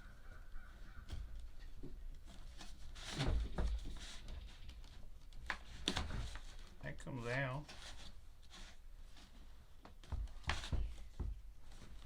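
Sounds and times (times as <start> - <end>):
plastic knock and rub: 9.9 - 12.0.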